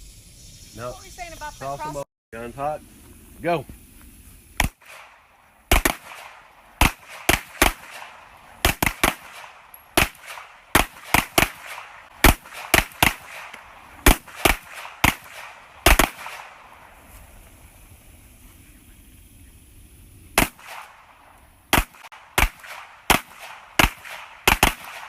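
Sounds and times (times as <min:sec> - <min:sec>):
pistol shots: 0:04.6 - 0:16.9, 0:20.4 - 0:25.0.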